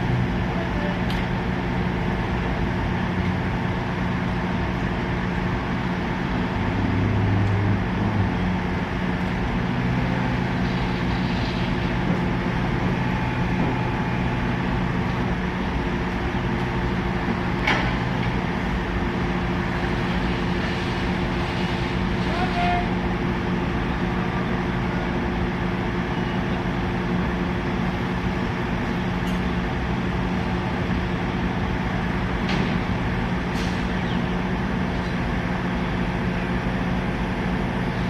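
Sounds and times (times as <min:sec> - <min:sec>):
heavy machinery engine drone: 0:00.0 - 0:38.0.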